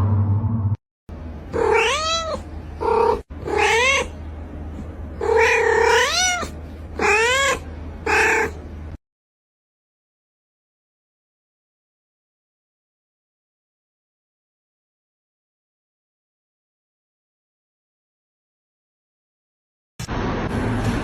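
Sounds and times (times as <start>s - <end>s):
steady low hum: 0.0s - 5.8s, 7.6s - 9.0s
cat meowing: 1.5s - 4.2s, 5.2s - 8.6s.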